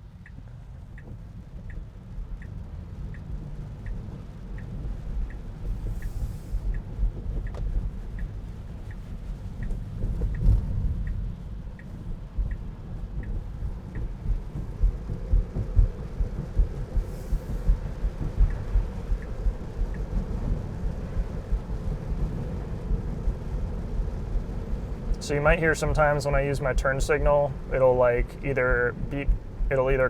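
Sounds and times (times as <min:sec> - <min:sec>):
road noise rumble in car: 0:00.0 - 0:30.0
turn signal ticking: 0:00.0 - 0:30.0.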